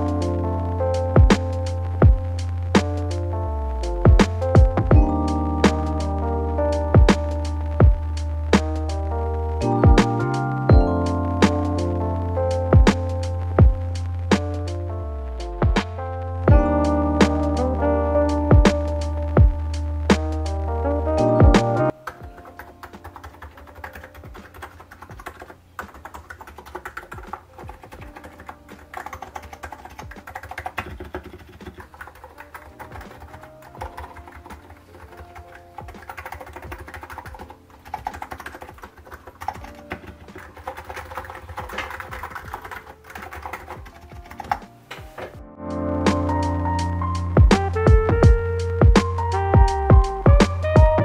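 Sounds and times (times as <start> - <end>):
fast keyboard typing: 21.2 - 45.2.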